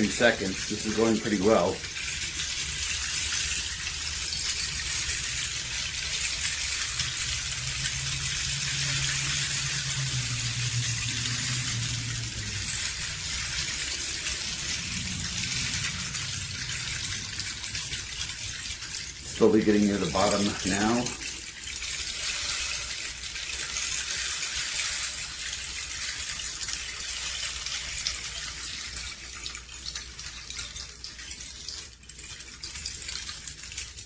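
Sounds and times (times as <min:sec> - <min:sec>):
rain stick hissing: 0:00.0 - 0:30.3.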